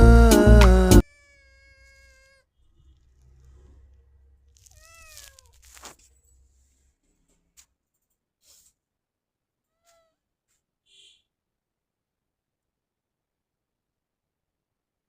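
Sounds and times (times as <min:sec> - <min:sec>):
background music: 0:00.0 - 0:01.0
cat meowing: 0:01.0 - 0:02.6, 0:04.6 - 0:06.0, 0:09.7 - 0:10.2.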